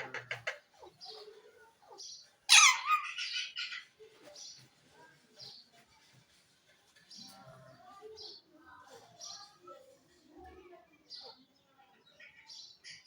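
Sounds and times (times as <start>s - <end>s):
parrot squawking: 2.5s - 3.8s.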